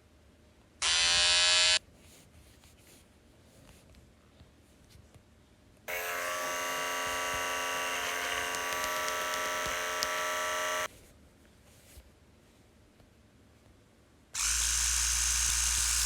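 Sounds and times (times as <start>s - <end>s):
electric buzz through phone speaker: 0.8s - 1.8s, 5.9s - 10.9s.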